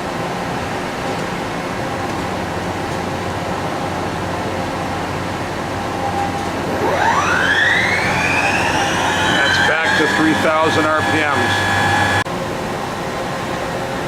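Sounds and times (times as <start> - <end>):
spindle mechanical hum: 0.0 - 14.0
rising machine whine: 5.7 - 12.2.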